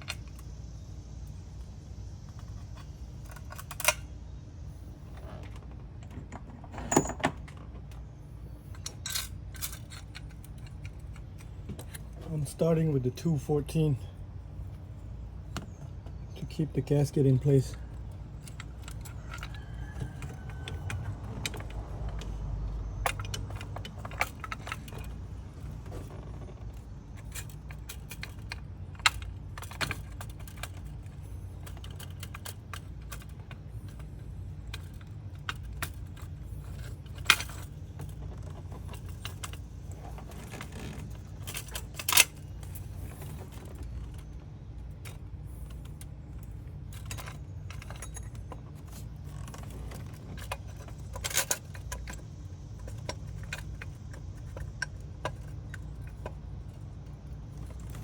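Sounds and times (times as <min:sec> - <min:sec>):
steady low hum: 0:00.0 - 0:58.0
metal tools and bolts clinking: 0:06.0 - 0:08.0, 0:08.6 - 0:14.0, 0:15.5 - 0:58.0.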